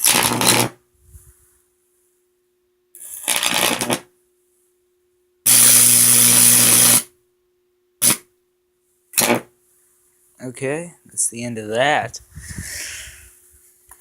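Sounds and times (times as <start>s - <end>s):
electric arc crackling and buzzing: 0.0s - 0.8s, 3.0s - 4.1s, 5.5s - 7.1s, 8.0s - 8.3s, 9.2s - 9.5s.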